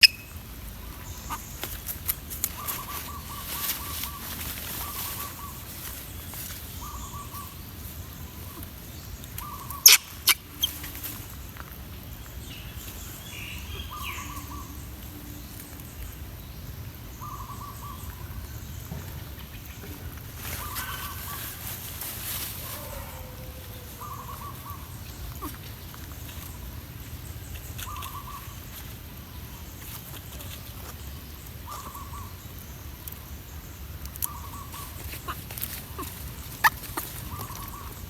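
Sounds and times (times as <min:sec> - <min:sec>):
animal trilled calls: 0:09.4 - 0:10.8, 0:34.2 - 0:38.0.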